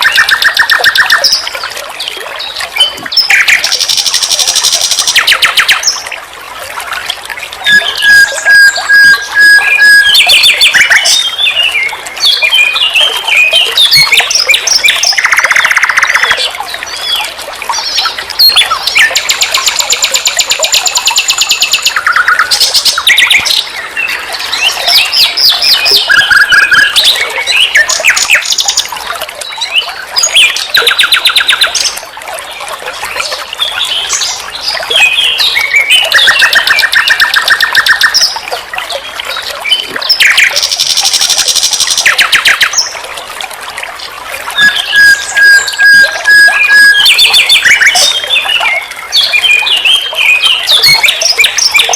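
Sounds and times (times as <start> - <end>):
nightingale singing: 44.6 - 51.9.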